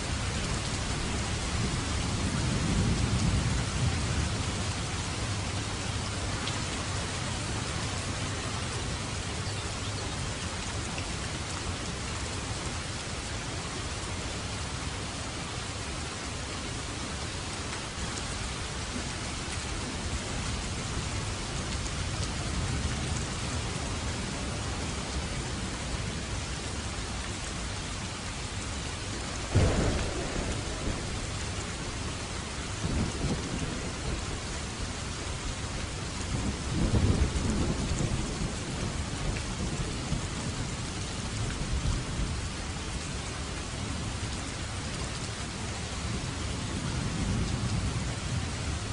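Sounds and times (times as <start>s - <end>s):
steady rain falling: 0.0s - 48.9s
thunder cracking and rumbling: 29.5s - 34.4s, 36.3s - 40.8s.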